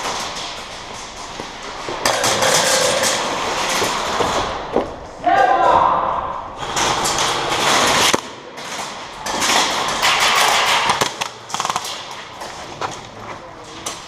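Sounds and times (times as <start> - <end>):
airsoft guns firing: 6.7 - 12.4.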